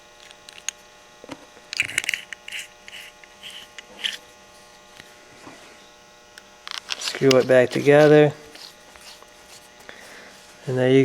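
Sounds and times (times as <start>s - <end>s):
steady electrical hum: 0.0s - 11.0s
flashlight parts clicking and scraping: 0.2s - 0.8s, 1.7s - 4.3s, 6.4s - 10.6s.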